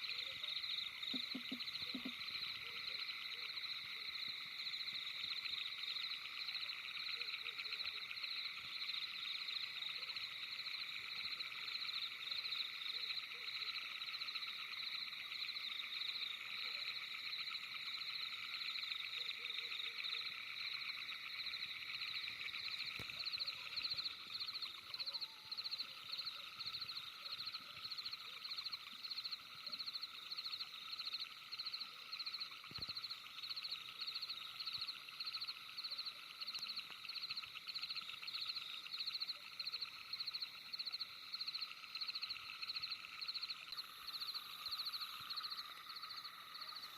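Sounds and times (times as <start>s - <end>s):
chorus of frogs calling: 0.0s - 46.9s
single frog calling regularly: 0.0s - 46.9s.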